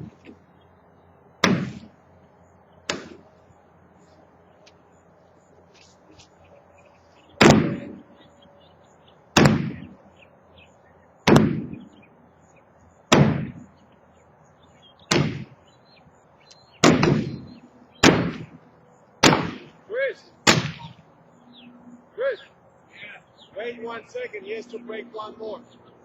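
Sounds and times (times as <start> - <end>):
birds chirping faintly: 0.0 - 26.0
heavy blows on silo wall: 1.4 - 2.0, 7.4 - 8.1, 9.3 - 10.0, 11.2 - 11.9, 13.1 - 13.8, 15.1 - 15.6, 16.8 - 18.6.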